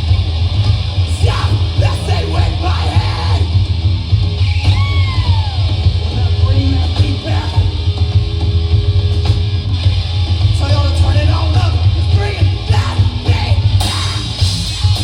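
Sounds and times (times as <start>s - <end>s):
heavy bass: 0.0s - 15.0s
live rock band playing: 0.0s - 15.0s
shouted vocals: 1.0s - 3.7s, 4.4s - 7.8s, 10.7s - 15.0s.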